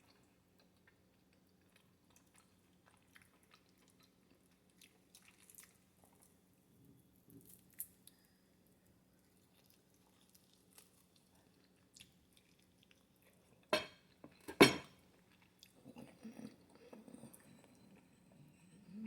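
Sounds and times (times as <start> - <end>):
chewing: 0.0 - 6.4, 9.2 - 19.0
faint eating sounds: 0.0 - 19.0
tableware clattering: 13.8 - 15.0.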